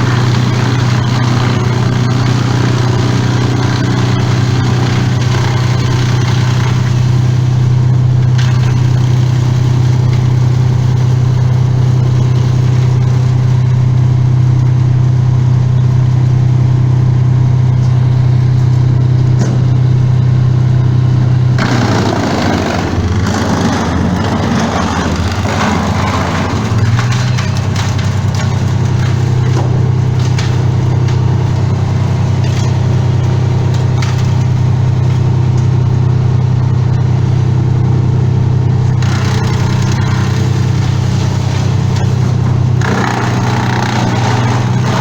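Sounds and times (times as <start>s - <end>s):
chainsaw engine running: 0.0s - 14.1s, 20.4s - 35.8s, 39.0s - 45.0s.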